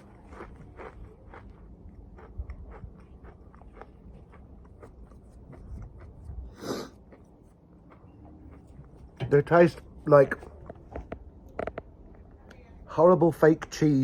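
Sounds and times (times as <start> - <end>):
person chewing crunchy chips: 0.0 - 9.2.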